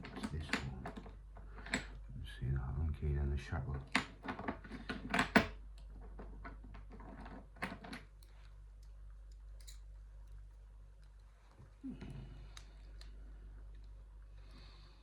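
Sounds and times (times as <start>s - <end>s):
metal key clicking in padlock: 7.9s - 9.9s.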